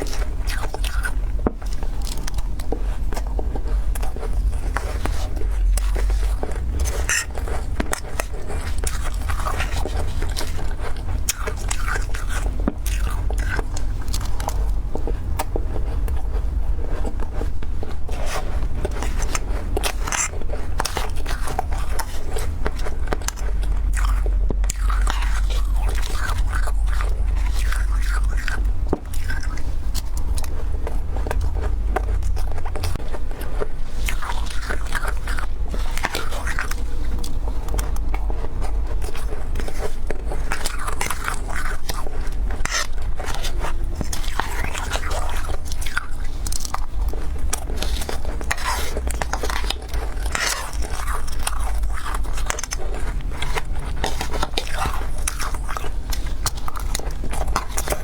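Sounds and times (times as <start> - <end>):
frost being chewed: 0.0 - 58.0
steady low hum: 0.0 - 58.0
steady low rumble: 0.0 - 58.0
ice crunching and scraping: 3.6 - 13.6.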